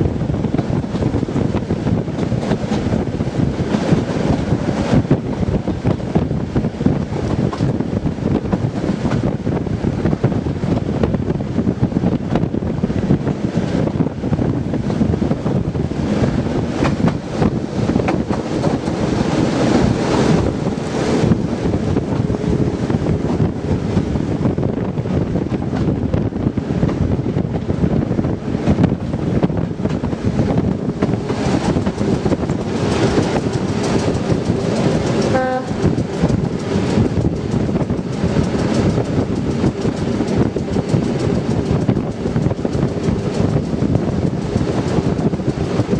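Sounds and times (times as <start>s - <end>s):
diesel train engine: 0.0s - 45.9s
train wheels on rail: 0.0s - 45.9s
wind buffeting microphone: 0.0s - 45.9s
train horn toot: 35.2s - 36.0s.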